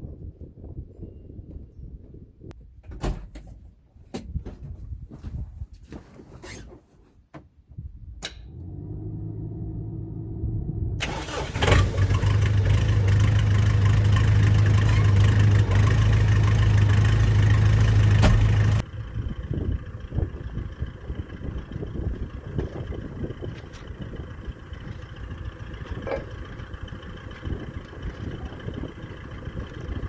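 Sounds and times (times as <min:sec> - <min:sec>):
engine starting and running: 0:08.2 - 0:30.0.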